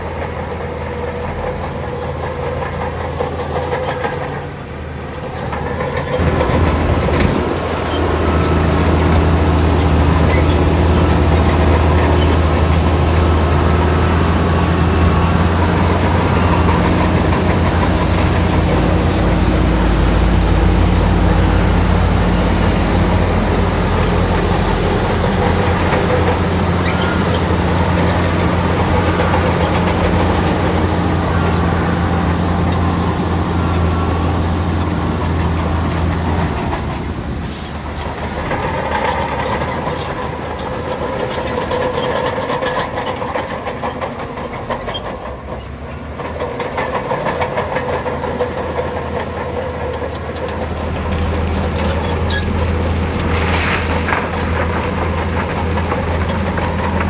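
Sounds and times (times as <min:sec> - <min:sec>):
diesel engine drone: 0:00.0 - 0:57.0.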